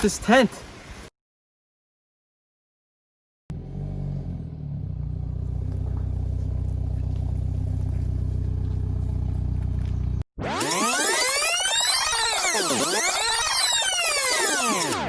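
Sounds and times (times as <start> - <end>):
motor droning: 3.5 - 14.8.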